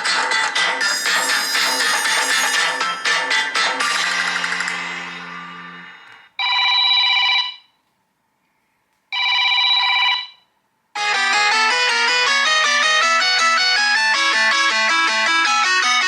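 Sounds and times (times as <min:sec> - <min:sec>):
melodic ringtone: 0:00.0 - 0:07.6, 0:11.0 - 0:16.0
phone ringing: 0:00.8 - 0:04.7, 0:06.3 - 0:07.8, 0:09.1 - 0:16.0
quick repeating melodic ringtone: 0:00.8 - 0:05.0, 0:11.0 - 0:16.0.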